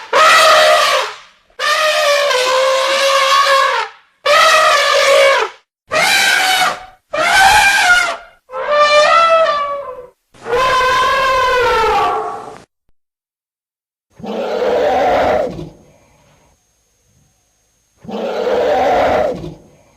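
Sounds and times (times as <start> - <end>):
elephant trumpeting: 0.0 - 12.6, 14.2 - 15.6, 18.0 - 19.4.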